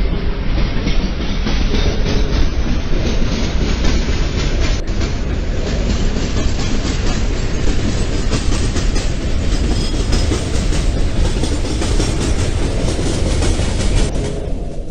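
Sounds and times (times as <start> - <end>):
rail joint clacks: 0.0 - 14.9
train wheels rumbling on rail: 0.0 - 14.9.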